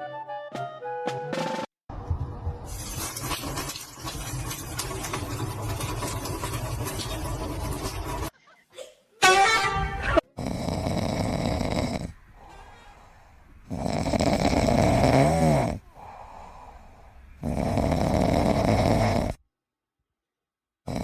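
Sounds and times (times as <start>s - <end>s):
loud snoring: 10.4s - 12.2s, 13.7s - 15.9s, 17.4s - 19.4s
quiet breaths: 10.4s - 19.4s.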